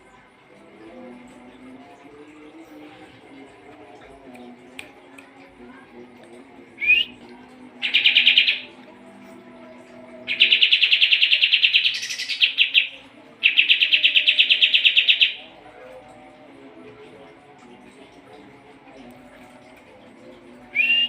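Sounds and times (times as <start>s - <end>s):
songbird trilling: 10.3s - 15.4s.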